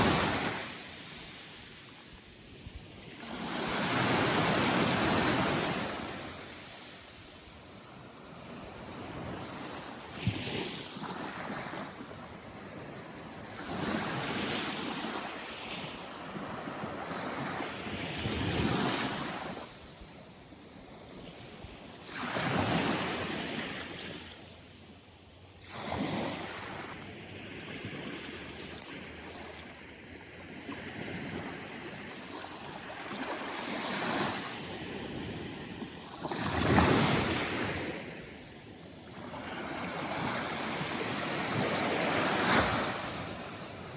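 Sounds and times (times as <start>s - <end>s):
small waves washing ashore: 25.3s - 43.9s.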